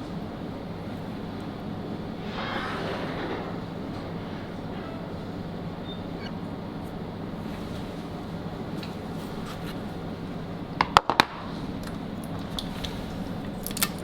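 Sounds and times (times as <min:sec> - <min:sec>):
low room hum: 0:00.0 - 0:14.0.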